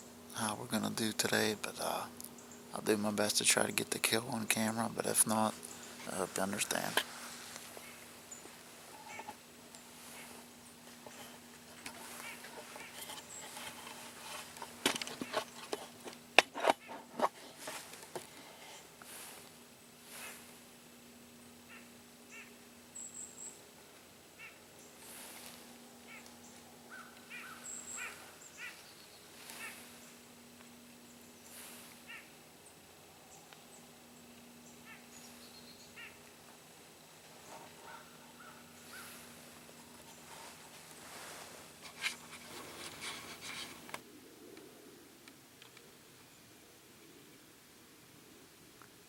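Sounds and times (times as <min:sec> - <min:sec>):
faint short bird calls: 0:05.6 - 0:13.5, 0:21.6 - 0:23.6, 0:24.4 - 0:30.3, 0:31.0 - 0:32.4, 0:34.6 - 0:36.2, 0:37.4 - 0:40.3.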